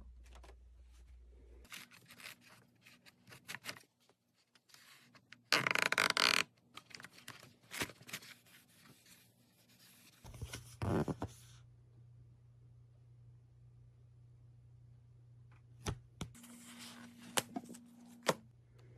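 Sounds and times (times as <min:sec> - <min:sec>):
faint low hum: 0:08.1 - 0:18.9.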